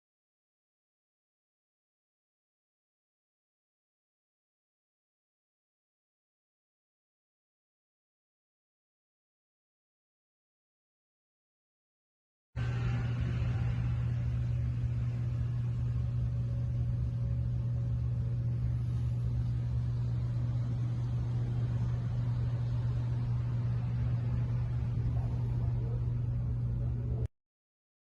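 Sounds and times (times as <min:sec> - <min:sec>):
pump motor humming: 0:12.6 - 0:27.3.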